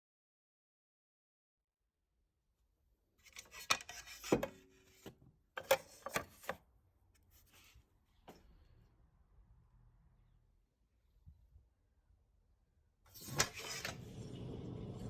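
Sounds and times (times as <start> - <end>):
objects scraping and rubbing: 3.2 - 5.1, 13.1 - 15.0.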